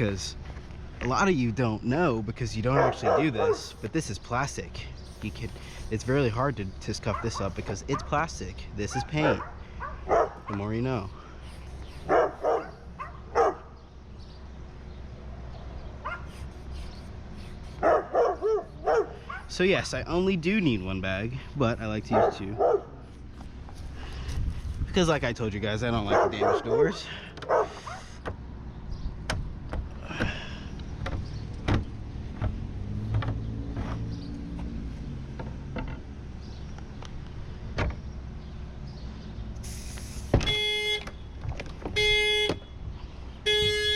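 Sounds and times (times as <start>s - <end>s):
light clicks and knocks on car door: 29.2s - 34.0s
car alarm horn blasts: 40.4s - 42.8s, 43.4s - 43.9s.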